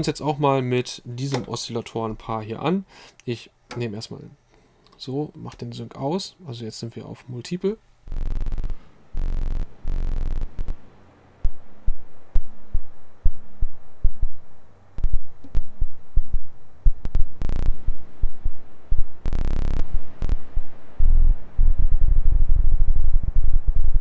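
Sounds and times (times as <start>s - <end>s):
drone synthesizer throbbing pulses: 8.1s - 23.4s.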